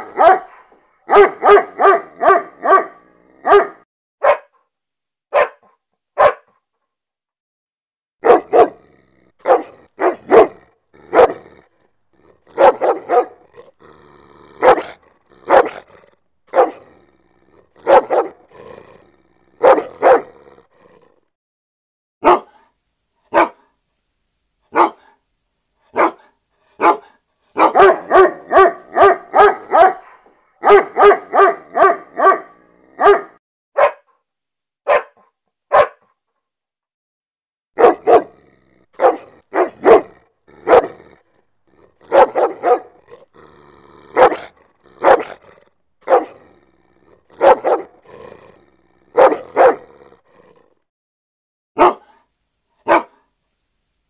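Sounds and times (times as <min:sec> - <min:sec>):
dog barking aggressively: 0:00.0 - 0:04.6, 0:05.3 - 0:06.5, 0:08.2 - 0:17.0, 0:17.6 - 0:20.6, 0:22.2 - 0:22.6, 0:23.3 - 0:23.6, 0:24.7 - 0:25.2, 0:25.9 - 0:34.1, 0:34.9 - 0:36.0, 0:37.8 - 0:50.2, 0:51.8 - 0:52.2, 0:52.8 - 0:53.2.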